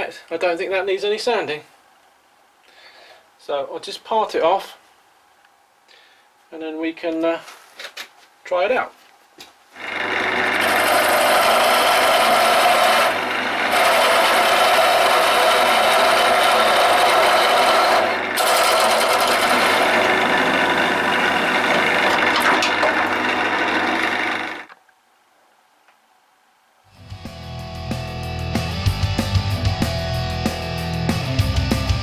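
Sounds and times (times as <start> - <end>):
lathe tool cutting wood hiss: 9.8 - 22.4
lathe motor humming: 9.8 - 24.8.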